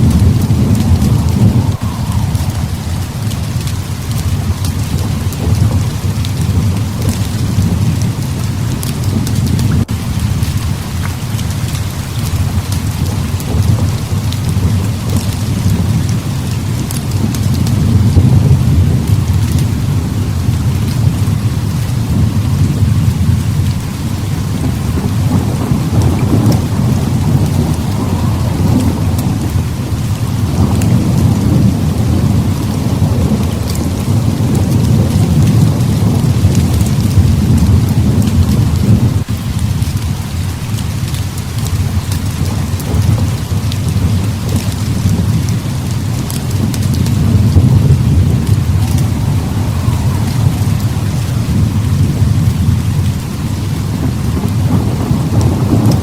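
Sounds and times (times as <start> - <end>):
heavy rain pouring: 0.0 - 56.0
low rolling thunder: 0.0 - 56.0.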